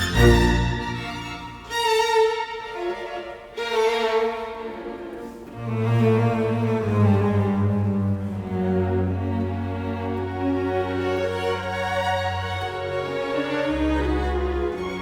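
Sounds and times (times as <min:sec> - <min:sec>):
slow bowed-string melody: 0:00.0 - 0:15.0.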